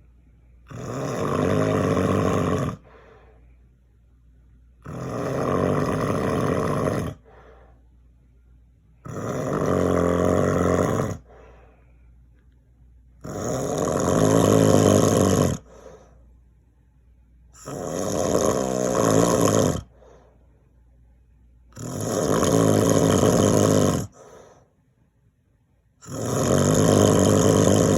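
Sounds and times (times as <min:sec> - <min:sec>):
man snoring: 0:00.7 - 0:03.0, 0:04.8 - 0:07.4, 0:09.0 - 0:11.4, 0:13.2 - 0:15.9, 0:17.6 - 0:20.0, 0:21.8 - 0:24.4, 0:26.0 - 0:27.9.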